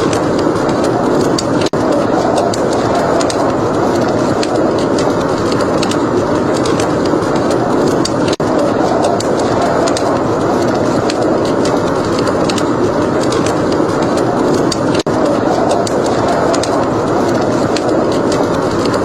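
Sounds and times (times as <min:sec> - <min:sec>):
steady rushing noise: 0:00.0 - 0:19.0
wood fire crackling: 0:00.0 - 0:19.0.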